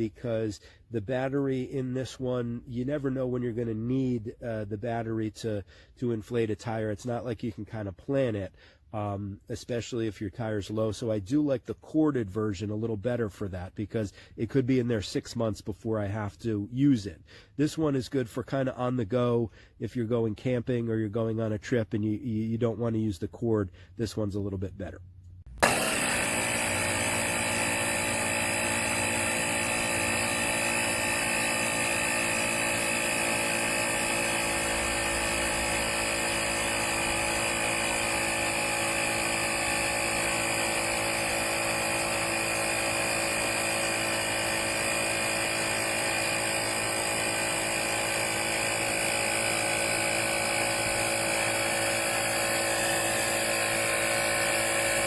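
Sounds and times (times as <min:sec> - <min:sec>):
air compressor motor drone: 0:25.5 - 0:55.0.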